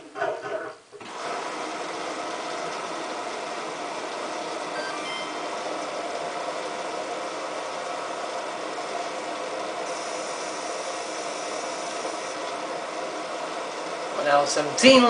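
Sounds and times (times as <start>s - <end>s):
washing machine whooshing: 1.0s - 15.0s
faint hum: 4.7s - 15.0s.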